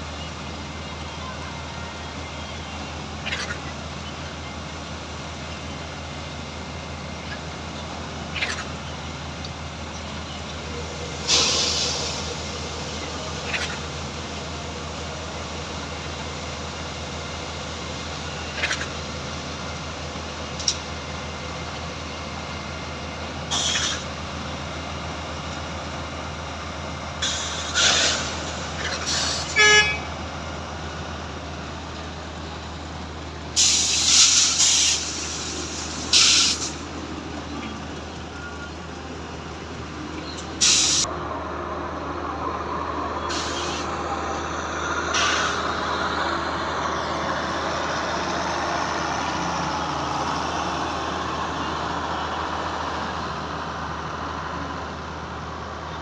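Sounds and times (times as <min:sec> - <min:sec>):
diesel engine running: 0:00.0 - 0:56.0
compressed air hissing: 0:11.1 - 0:13.5, 0:33.6 - 0:36.8, 0:40.6 - 0:41.1.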